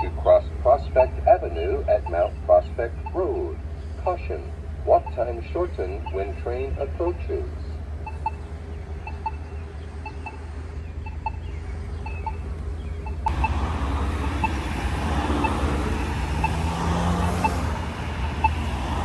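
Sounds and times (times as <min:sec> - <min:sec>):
road traffic passing: 0:00.0 - 0:19.0
pedestrian button ticking: 0:07.3 - 0:19.0.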